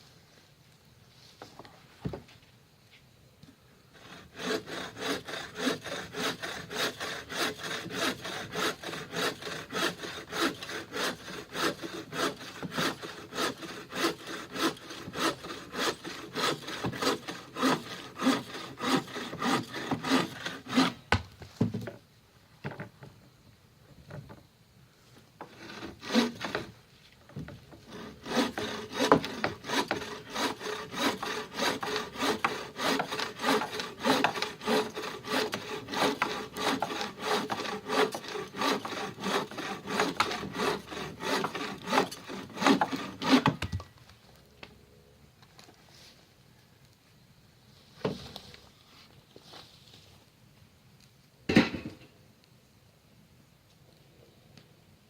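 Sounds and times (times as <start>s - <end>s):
hand saw cutting wood: 4.0s - 21.2s, 25.4s - 26.8s, 27.4s - 43.8s.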